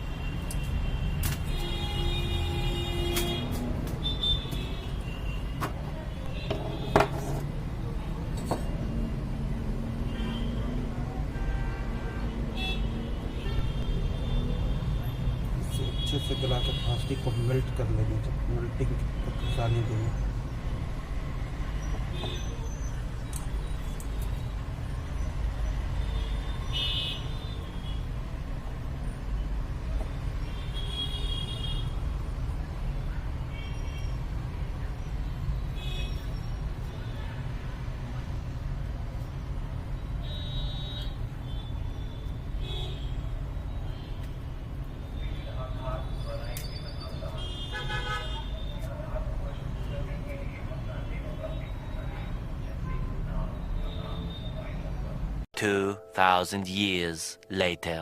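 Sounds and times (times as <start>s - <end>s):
road traffic rumble: 0.0s - 55.5s.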